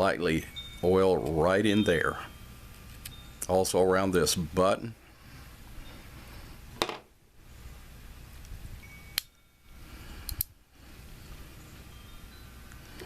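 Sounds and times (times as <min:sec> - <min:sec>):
small metallic clicks of handgun: 0:10.3 - 0:10.6.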